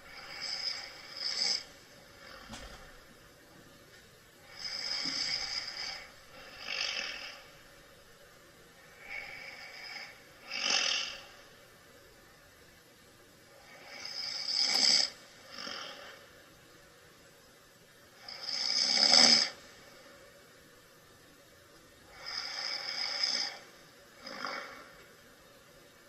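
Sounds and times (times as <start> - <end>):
man snoring: 0.1 - 2.4, 4.5 - 7.5, 9.0 - 11.3, 13.7 - 16.2, 18.2 - 19.6, 22.1 - 23.6, 24.2 - 24.9.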